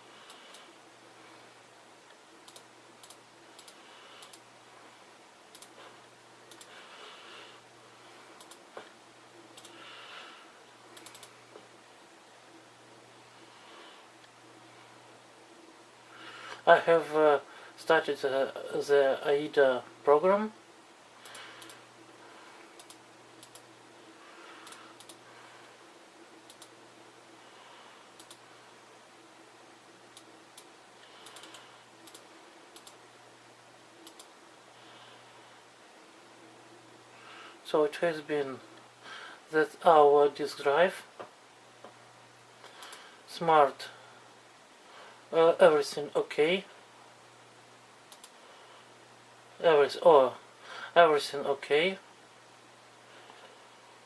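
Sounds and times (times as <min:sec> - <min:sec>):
steady low hum: 0:00.0 - 0:54.0
computer mouse clicks: 0:02.1 - 0:04.5, 0:05.5 - 0:05.8, 0:06.5 - 0:06.7, 0:08.4 - 0:08.9, 0:09.5 - 0:09.8, 0:10.9 - 0:11.6, 0:21.2 - 0:21.8, 0:22.8 - 0:23.7, 0:24.6 - 0:25.2, 0:26.4 - 0:26.8, 0:28.1 - 0:28.5, 0:30.1 - 0:33.0, 0:34.0 - 0:34.4, 0:42.6 - 0:43.1, 0:48.1 - 0:48.4.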